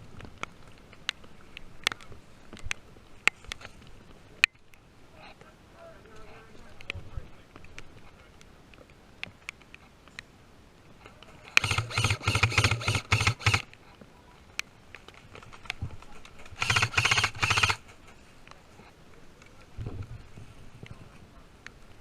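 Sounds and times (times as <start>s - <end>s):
airsoft gun full-auto bursts: 11.6s - 13.7s, 16.6s - 17.8s.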